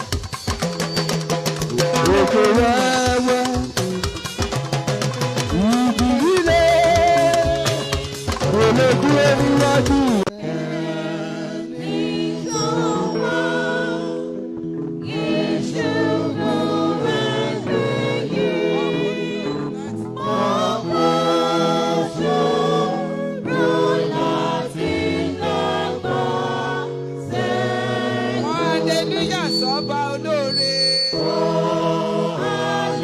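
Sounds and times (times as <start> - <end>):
choir singing gospel song: 1.8 - 4.4, 5.6 - 33.0
sustained low chords: 5.4 - 22.7.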